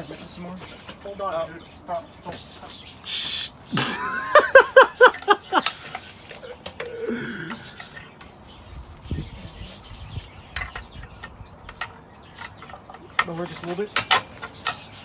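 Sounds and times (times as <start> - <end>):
metal tools clinking: 4.6 - 6.9, 10.5 - 15.0.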